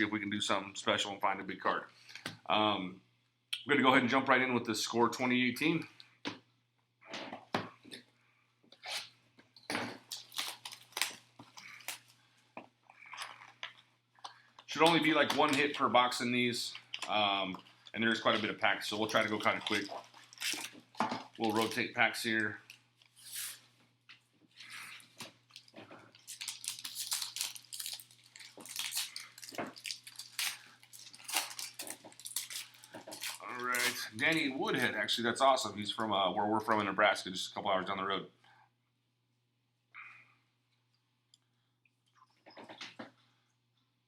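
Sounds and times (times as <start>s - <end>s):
card pack wrappers tearing: 10.0s - 12.1s, 16.6s - 23.6s, 25.5s - 34.8s.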